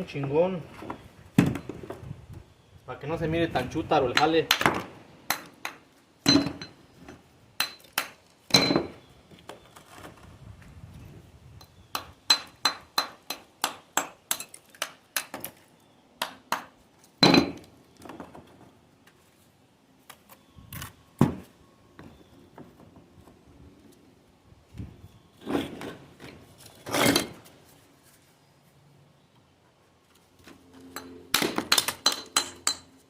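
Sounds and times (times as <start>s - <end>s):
metal tool tapping stone: 31.0s - 32.9s.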